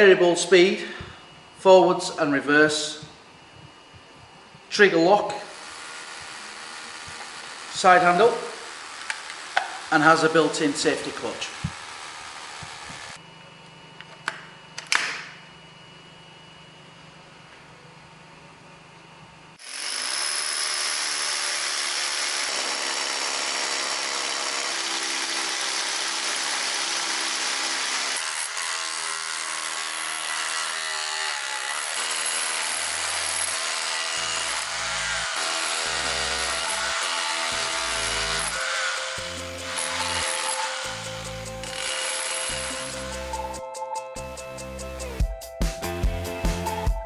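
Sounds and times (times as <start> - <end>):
hammer drill running: 5.3 - 13.2, 19.6 - 43.6.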